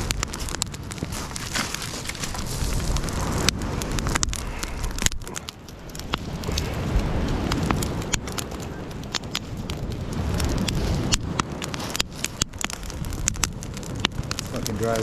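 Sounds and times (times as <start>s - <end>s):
campfire crackling and popping: 0.0s - 15.0s
steady low rumble: 0.0s - 15.0s.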